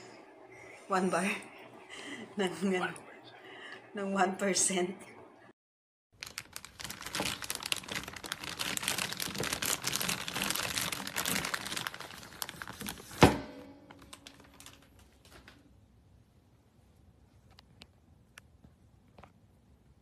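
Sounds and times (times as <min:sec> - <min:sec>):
crinkling and rustling: 0:06.2 - 0:15.7.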